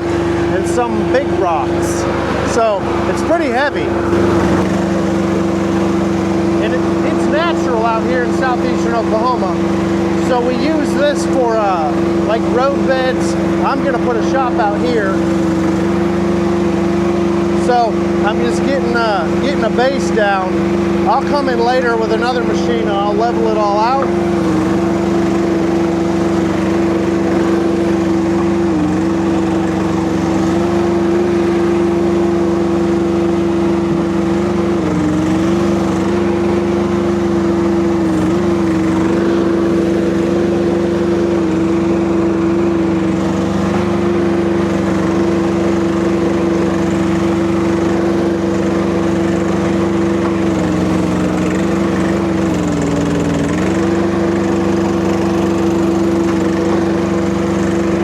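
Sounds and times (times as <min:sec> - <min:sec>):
diesel engine at high throttle: 0:00.0 - 0:58.0.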